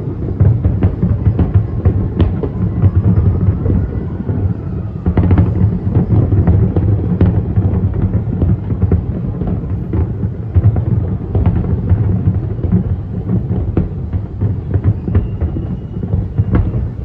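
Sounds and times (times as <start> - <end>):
fireworks crackling and popping: 0.0 - 17.0
low rumble of booms: 0.0 - 17.0.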